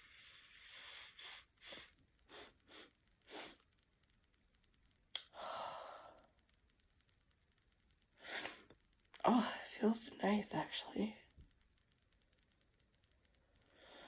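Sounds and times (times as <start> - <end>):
person breathing: 0.0 - 3.6, 5.3 - 6.3, 13.6 - 14.0
person sniffing: 0.0 - 3.6, 8.2 - 8.6.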